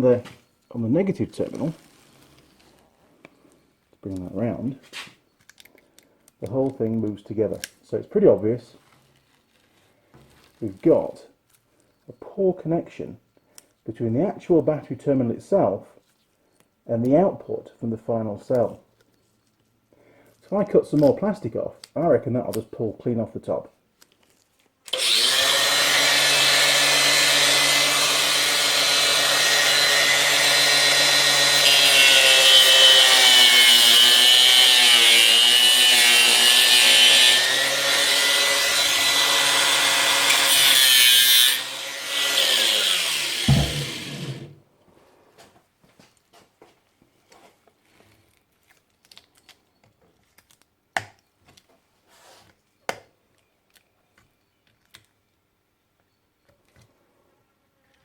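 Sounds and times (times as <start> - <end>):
small clicks and handling noises: 5.0 - 7.8, 8.4 - 12.1, 13.5 - 13.8, 16.0 - 16.8, 18.5 - 22.7, 24.0 - 25.0, 47.3 - 51.8, 52.4 - 55.4, 56.0 - 57.0
power tool cutting plastic: 24.9 - 44.6.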